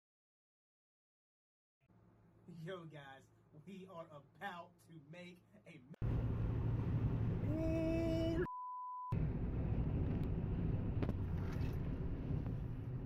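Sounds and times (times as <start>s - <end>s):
steady rumbling noise: 6.0s - 8.5s, 9.2s - 13.0s
censor bleep: 8.4s - 9.2s.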